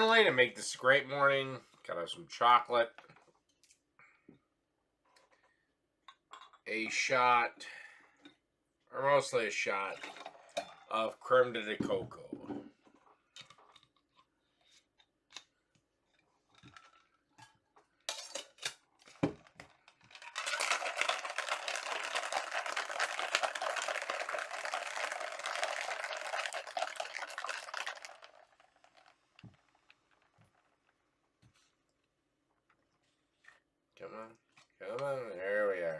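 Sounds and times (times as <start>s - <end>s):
cocktail shaker shaking: 20.2s - 29.1s.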